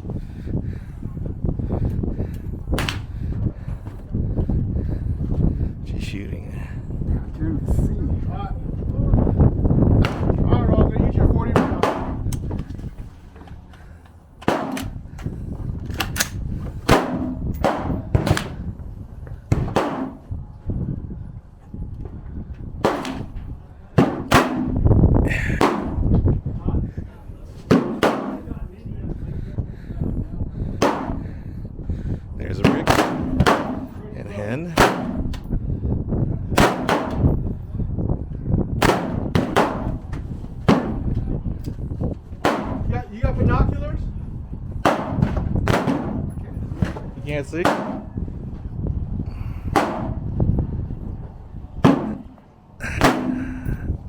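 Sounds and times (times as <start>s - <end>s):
gunshots: 14.5s - 14.9s, 16.0s - 18.6s, 19.5s - 20.2s, 24.0s - 24.8s, 27.7s - 28.5s, 32.6s - 34.0s, 34.7s - 35.3s, 36.6s - 37.2s, 44.8s - 46.2s, 47.6s - 48.1s
faint distant gunshots: 27.7s - 28.6s, 32.6s - 34.0s
gunshots with echo: 32.6s - 34.0s, 34.8s - 35.3s.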